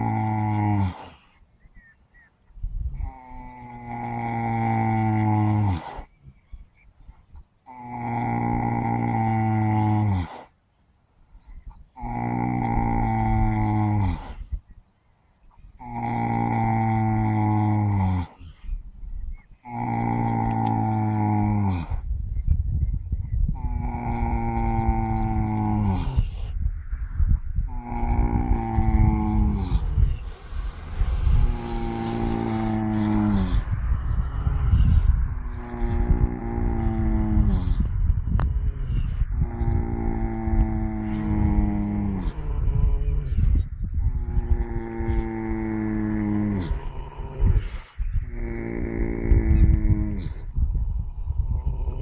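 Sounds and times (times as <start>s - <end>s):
steady low rumble: 15.4s - 52.0s
horse snoring: 19.6s - 22.0s, 23.6s - 26.4s, 27.7s - 30.2s, 31.3s - 33.8s, 35.5s - 43.5s, 44.1s - 52.0s.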